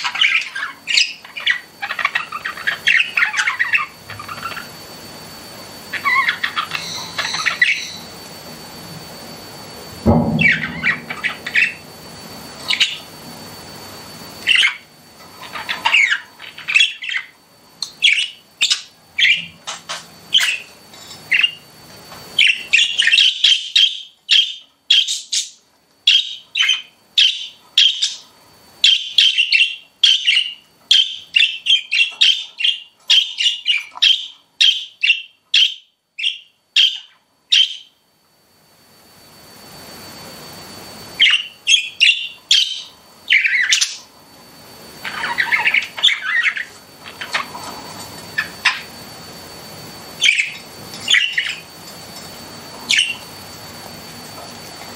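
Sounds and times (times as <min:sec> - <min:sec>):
budgerigars chirping: 0:00.0 - 0:04.7, 0:05.9 - 0:08.1, 0:10.4 - 0:11.8, 0:14.4 - 0:20.7, 0:22.4 - 0:28.2, 0:28.8 - 0:37.9, 0:41.2 - 0:44.0, 0:45.0 - 0:47.6, 0:50.2 - 0:51.7, 0:52.9 - 0:53.2.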